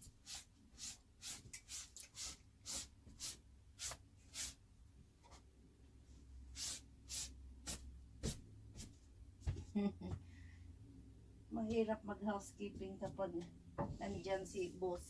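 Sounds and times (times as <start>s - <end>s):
scratchy brushing strokes: 0.0s - 4.6s, 6.5s - 9.0s.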